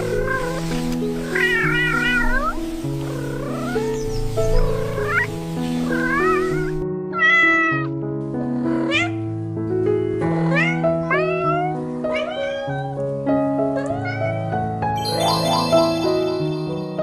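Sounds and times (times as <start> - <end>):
cat meowing: 0.0 - 7.9, 8.7 - 9.2, 10.4 - 13.0, 13.7 - 14.6
keyboard background music: 0.0 - 17.0.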